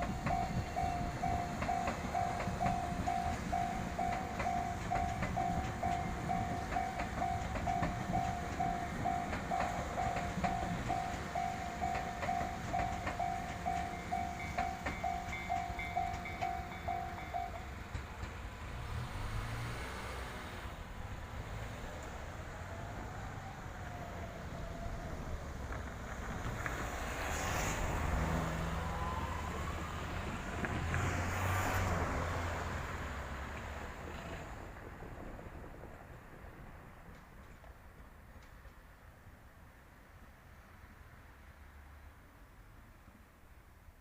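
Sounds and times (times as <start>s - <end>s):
level crossing warning bell: 0.0s - 17.9s
train passing with wheel clacks: 0.0s - 41.5s.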